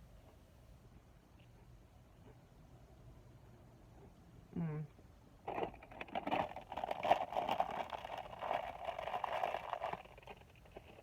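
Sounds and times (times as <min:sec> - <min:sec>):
packaging crinkling and rustling: 0:05.5 - 0:11.0.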